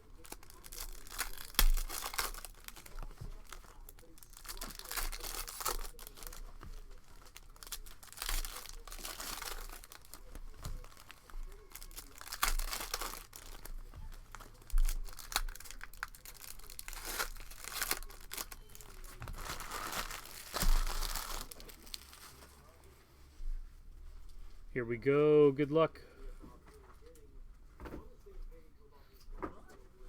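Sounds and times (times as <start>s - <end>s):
wrappers crinkling and tearing: 0.0s - 23.0s.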